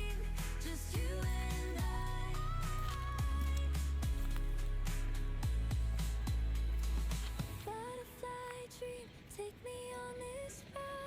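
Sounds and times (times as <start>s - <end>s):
background music with bass and drums: 0.0s - 7.8s.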